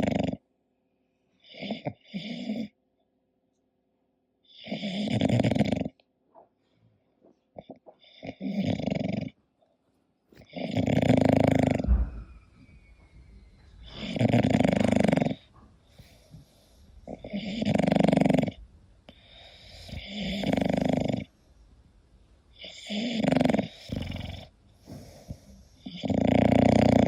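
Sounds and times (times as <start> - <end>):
dog snoring: 0.0 - 0.4, 1.4 - 2.8, 4.4 - 6.0, 7.6 - 9.4, 10.4 - 21.3, 22.5 - 27.0
quiet breathing: 9.6 - 27.0.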